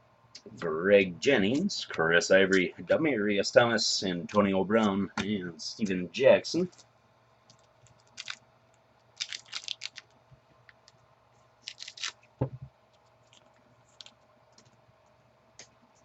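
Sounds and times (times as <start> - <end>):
dull thump: 12.4 - 12.7.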